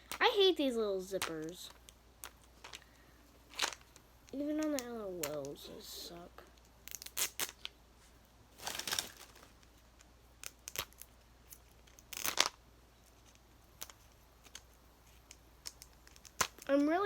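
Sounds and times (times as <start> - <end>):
plastic wrapping crinkling and tearing: 6.6 - 7.8, 8.6 - 12.6, 13.2 - 16.8.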